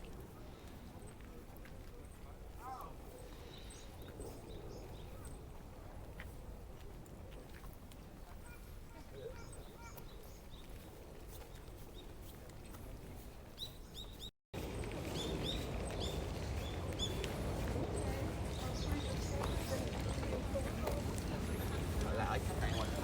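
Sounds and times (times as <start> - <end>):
outdoor ambience: 0.0 - 23.0
small birds chirping: 8.4 - 12.9, 13.6 - 23.0.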